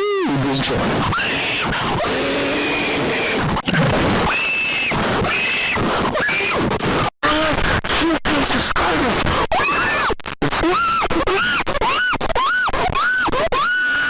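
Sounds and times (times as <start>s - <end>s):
harsh distorted static: 0.0s - 14.0s
short pitched screaming cries: 1.1s - 6.7s, 9.5s - 14.0s.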